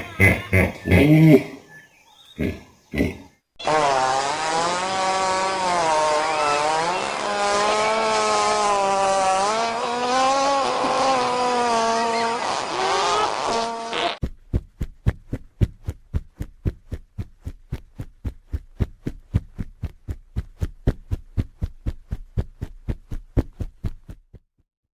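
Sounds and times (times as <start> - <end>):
hippopotamus fart: 2.4 - 14.2.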